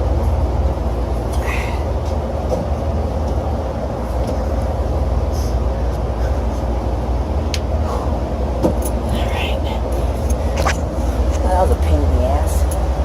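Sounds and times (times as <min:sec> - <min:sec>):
hvac unit rumbling: 0:00.0 - 0:13.0.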